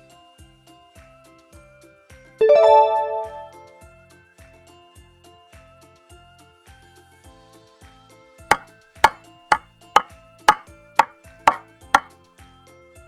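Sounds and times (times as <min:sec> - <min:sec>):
light piano music: 0:02.4 - 0:03.7
sharp knocks or chops: 0:08.5 - 0:12.1.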